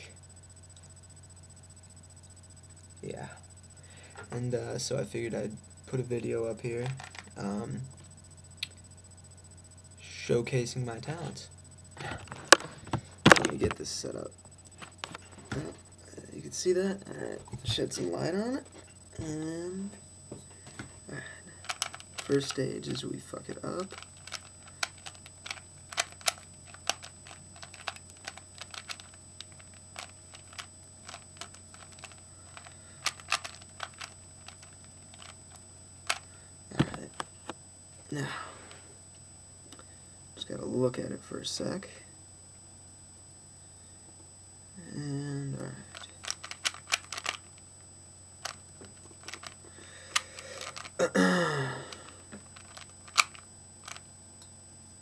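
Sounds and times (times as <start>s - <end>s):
plastic puzzle cube clicking: 21.6s - 22.6s, 23.8s - 35.4s, 45.9s - 47.5s, 49.2s - 50.9s, 52.6s - 54.0s.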